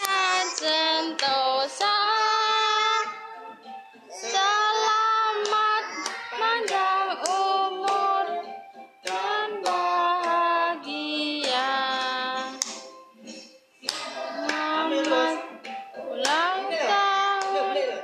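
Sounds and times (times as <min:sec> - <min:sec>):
hand claps: 0:00.0 - 0:01.9, 0:05.3 - 0:08.2, 0:09.0 - 0:10.5, 0:11.4 - 0:16.7, 0:17.3 - 0:17.8
children singing: 0:00.0 - 0:18.0.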